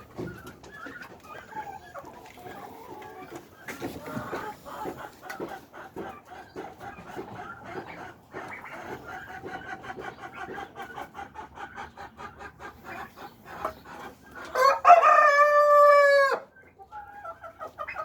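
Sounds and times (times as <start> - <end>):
chickens clucking: 0.0 - 18.0
rooster crowing: 14.6 - 16.5.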